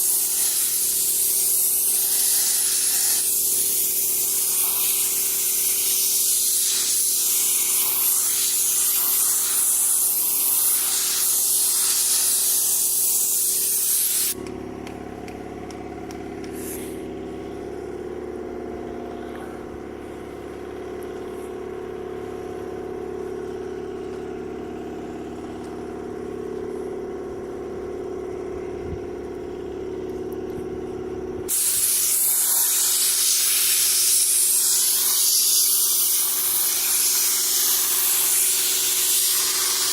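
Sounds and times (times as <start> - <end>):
paint spray gun hissing: 0.0 - 14.4, 16.4 - 17.2, 31.5 - 39.9
steady low hum: 14.3 - 31.5.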